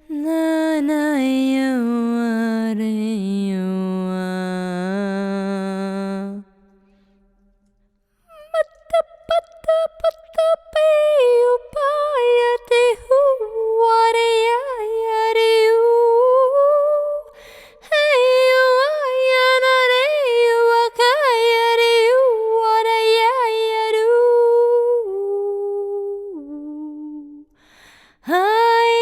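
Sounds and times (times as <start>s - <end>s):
woman singing wordless tones: 0.0s - 6.8s, 8.3s - 27.6s, 28.2s - 29.0s.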